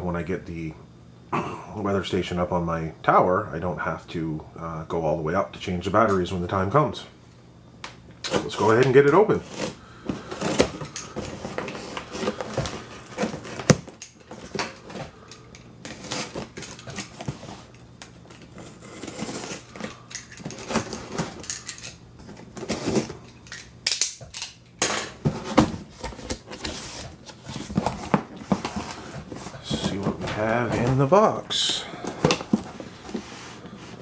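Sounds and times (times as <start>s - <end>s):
cardboard box being opened: 18.5s - 19.9s, 25.3s - 31.3s.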